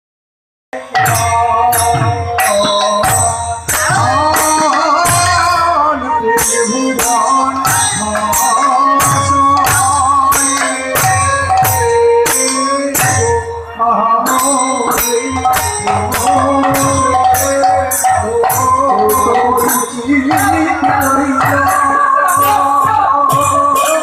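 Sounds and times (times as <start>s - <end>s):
hand cymbals ringing: 6.4s - 13.5s, 14.3s - 24.0s.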